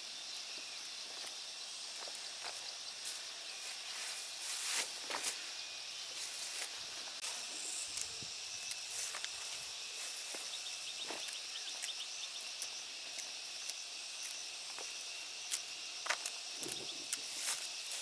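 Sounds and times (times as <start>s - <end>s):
high insect chorus: 0.0s - 18.0s.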